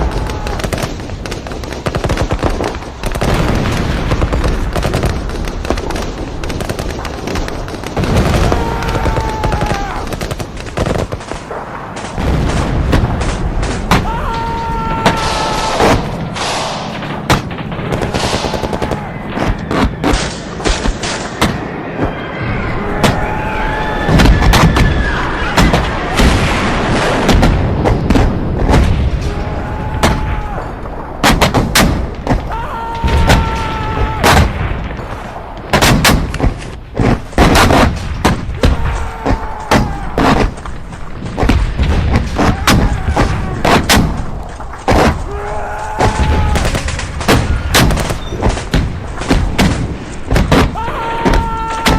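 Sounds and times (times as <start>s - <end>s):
gunshots cracking: 0.0s - 21.7s
booming explosions: 0.0s - 51.9s.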